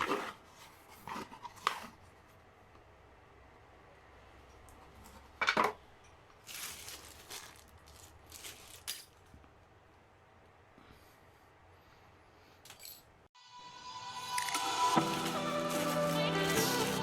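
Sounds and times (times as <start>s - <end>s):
rustling scrapes: 0.0s - 2.4s.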